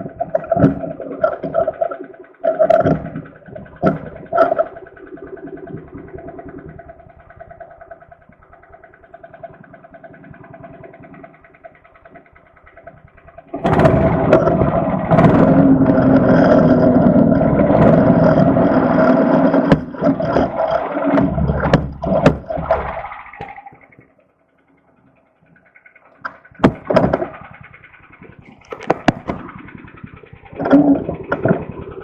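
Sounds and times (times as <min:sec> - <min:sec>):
small engine idling and revving: 0:00.0 - 0:32.0
clunks and knocks: 0:13.5 - 0:24.1, 0:26.2 - 0:27.6.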